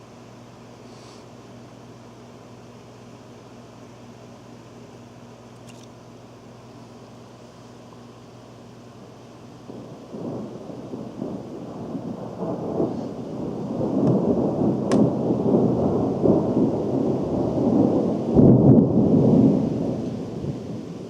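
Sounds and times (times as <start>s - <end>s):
thunder rumbling: 9.5s - 21.0s.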